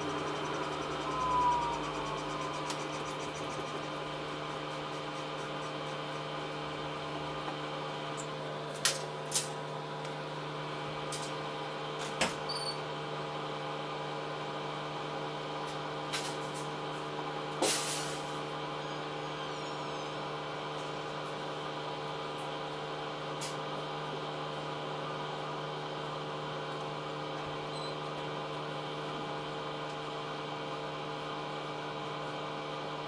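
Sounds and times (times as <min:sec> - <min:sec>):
washing machine motor hum: 0:00.0 - 0:08.7.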